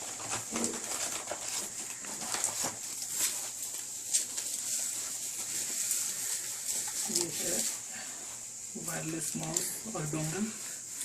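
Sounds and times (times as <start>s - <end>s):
packaging rustling and knocking: 0.0s - 7.8s
steady hiss: 0.0s - 11.0s.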